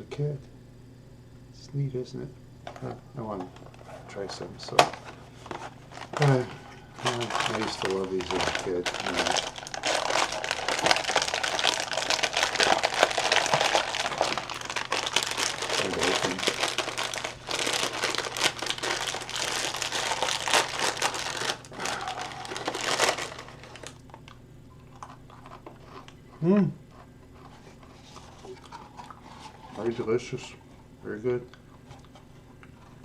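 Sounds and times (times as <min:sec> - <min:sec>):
snack packaging crinkling: 0:03.5 - 0:26.3.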